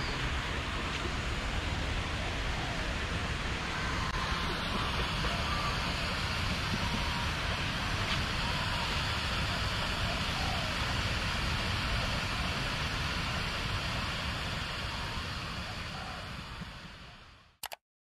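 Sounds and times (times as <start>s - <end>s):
steady rushing noise: 0.0s - 17.6s.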